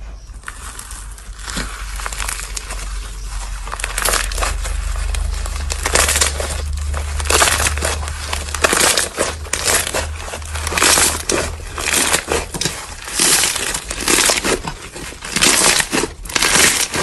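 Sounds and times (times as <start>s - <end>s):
steady low hum: 0.0s - 17.0s
slime crinkly crackling: 0.2s - 17.0s.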